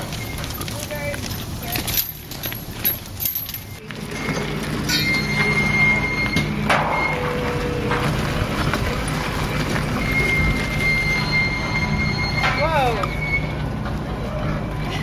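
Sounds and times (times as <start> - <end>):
thin high squeal: 3.6 - 7.2, 10.0 - 13.6.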